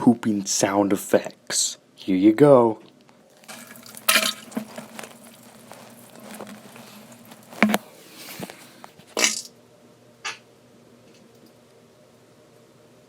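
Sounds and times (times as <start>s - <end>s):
short wet bursts: 3.3s - 9.5s.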